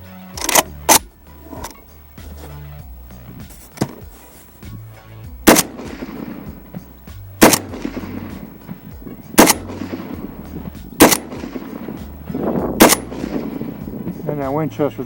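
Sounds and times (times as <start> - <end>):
rifle shots with echo: 5.4 - 14.4.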